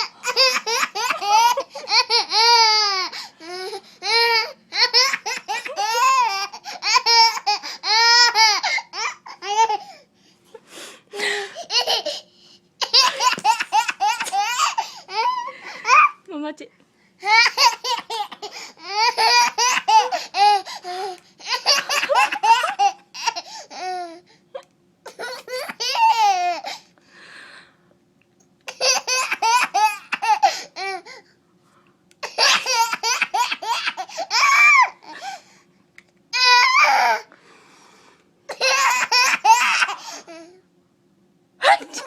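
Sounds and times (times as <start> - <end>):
baby laughing: 0.0 - 9.9, 11.6 - 12.2, 12.8 - 16.2, 17.2 - 24.0, 28.7 - 31.0, 32.2 - 35.2, 38.5 - 40.3.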